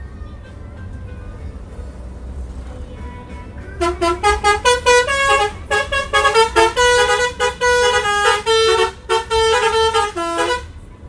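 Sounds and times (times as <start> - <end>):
bus horn playing a melody: 3.7 - 10.9.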